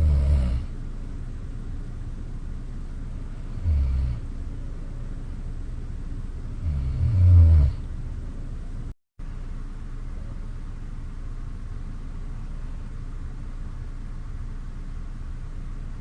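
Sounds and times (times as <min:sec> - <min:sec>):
person snoring: 0:00.0 - 0:00.7, 0:03.4 - 0:04.2, 0:06.6 - 0:07.9
low background hum: 0:00.0 - 0:16.0.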